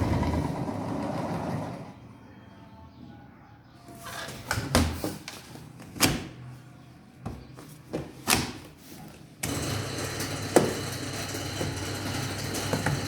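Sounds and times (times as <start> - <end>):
washing machine knocking: 9.4 - 13.0.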